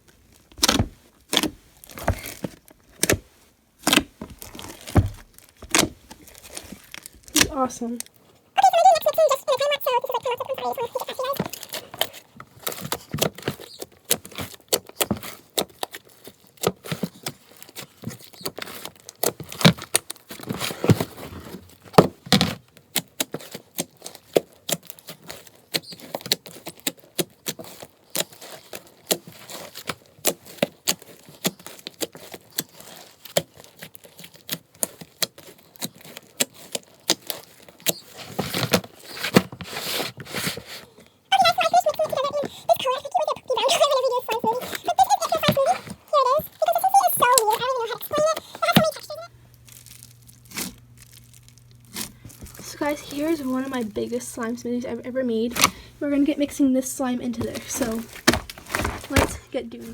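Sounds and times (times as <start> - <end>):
slime squishing with wet pops: 11.0 - 40.6.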